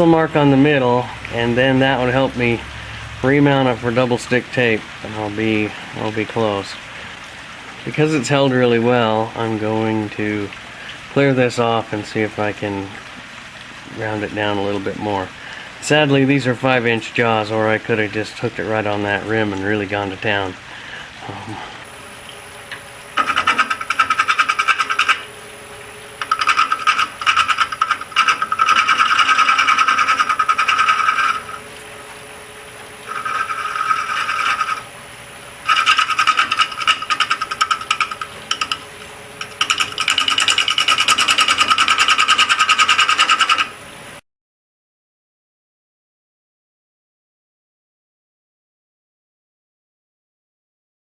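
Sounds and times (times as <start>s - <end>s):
faint high whine: 20.0s - 44.2s
lathe tool chattering on wood: 23.2s - 25.3s, 26.2s - 31.6s, 33.1s - 34.9s, 35.6s - 43.7s.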